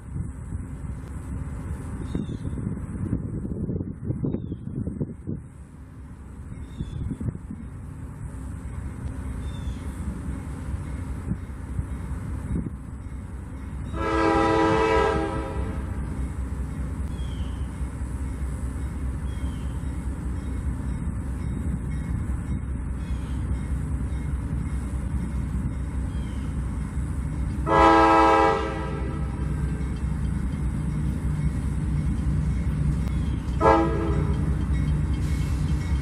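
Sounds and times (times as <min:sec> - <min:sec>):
train rumbling past: 0:00.0 - 0:36.0
locomotive horn blasts: 0:13.9 - 0:16.1, 0:27.6 - 0:30.0, 0:33.6 - 0:34.6.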